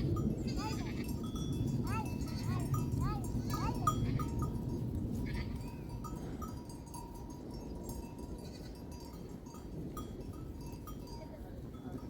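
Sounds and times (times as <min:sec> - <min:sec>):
sheep and goats bleating: 0:00.0 - 0:04.5, 0:05.2 - 0:05.9, 0:08.4 - 0:09.0
animal bells clinking: 0:00.0 - 0:12.0.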